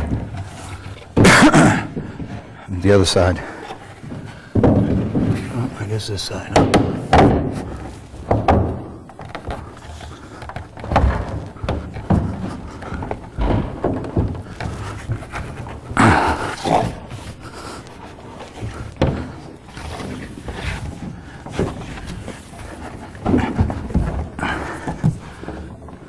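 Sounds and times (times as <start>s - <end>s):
wooden panels knocking and thumping: 0.0s - 26.0s
rustling scrape: 2.0s - 6.2s, 14.2s - 25.5s.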